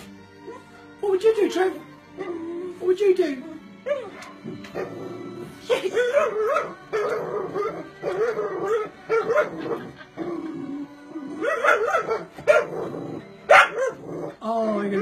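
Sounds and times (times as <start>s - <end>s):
music from a television: 0.0s - 15.0s
dog yipping and whining: 3.8s - 4.4s.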